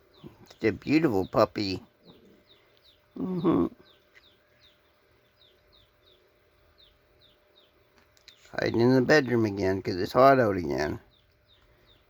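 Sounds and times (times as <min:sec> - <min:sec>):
small bird chirping: 0:00.0 - 0:12.0.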